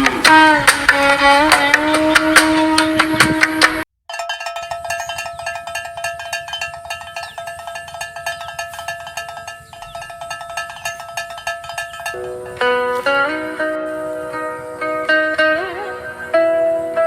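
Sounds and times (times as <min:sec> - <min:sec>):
held music drone: 0:00.0 - 0:03.8, 0:06.5 - 0:17.0.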